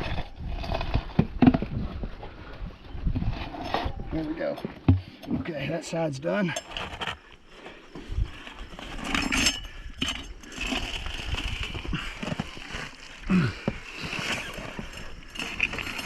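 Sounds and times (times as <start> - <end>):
metal tools clinking: 8.6 - 13.0.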